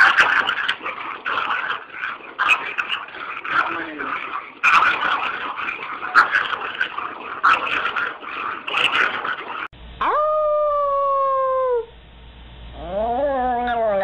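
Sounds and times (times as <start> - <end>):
dog howling: 12.8 - 14.0.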